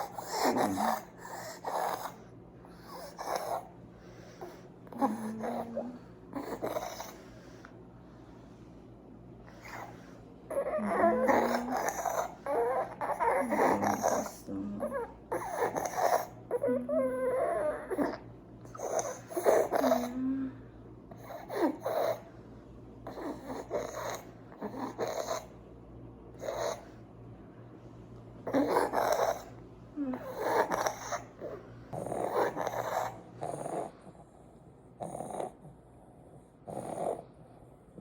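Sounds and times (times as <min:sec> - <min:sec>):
infant whimpering and grunting: 0:00.0 - 0:02.2, 0:04.9 - 0:07.2, 0:09.6 - 0:20.6, 0:28.5 - 0:33.7
rattly snoring breathing: 0:00.0 - 0:07.7, 0:09.5 - 0:20.3, 0:21.2 - 0:22.3, 0:23.1 - 0:25.5, 0:26.4 - 0:27.0, 0:28.5 - 0:29.6, 0:30.2 - 0:34.4, 0:35.0 - 0:36.0, 0:36.6 - 0:37.5.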